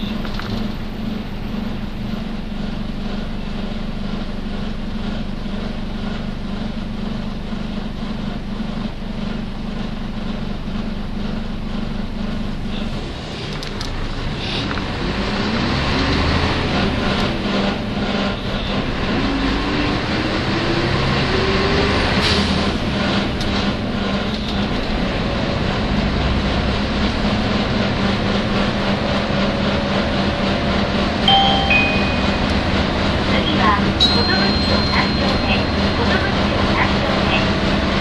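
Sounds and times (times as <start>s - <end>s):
bus engine whining: 0.0s - 38.0s
short high beep: 31.3s - 32.9s, 34.0s - 36.1s.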